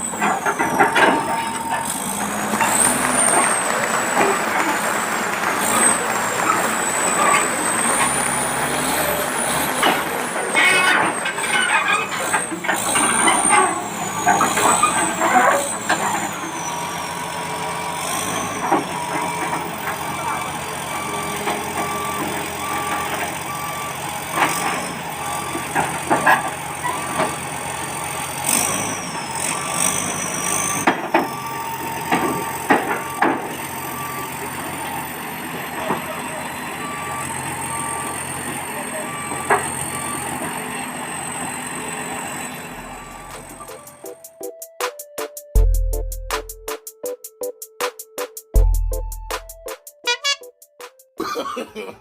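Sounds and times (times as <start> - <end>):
diesel engine running: 0.0 - 44.5
steel tracks clanking: 0.0 - 45.1
reversing alarm beeping: 0.1 - 3.6, 13.0 - 50.8.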